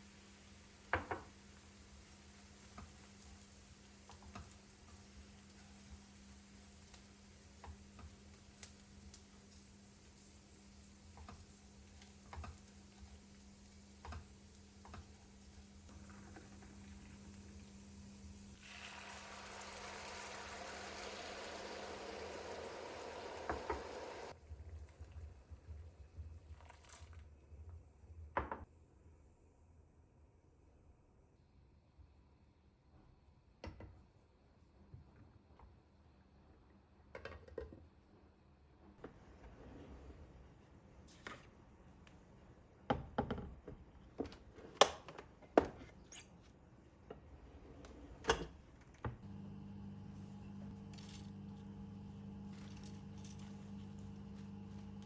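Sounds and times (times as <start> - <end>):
running water hiss: 0.0 - 24.4.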